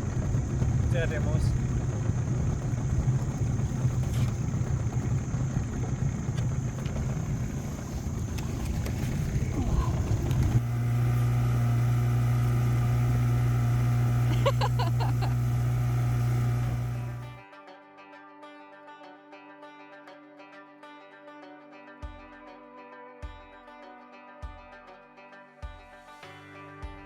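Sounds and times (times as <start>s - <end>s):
engine humming: 0.0s - 17.4s.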